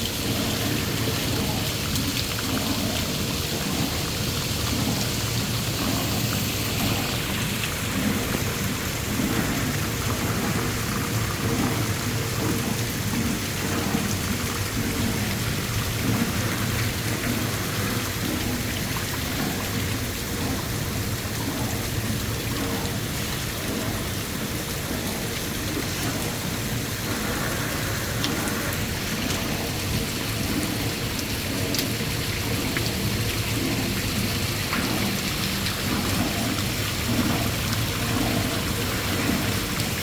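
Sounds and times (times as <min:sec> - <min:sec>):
rushing water: 0:00.0 - 0:40.0.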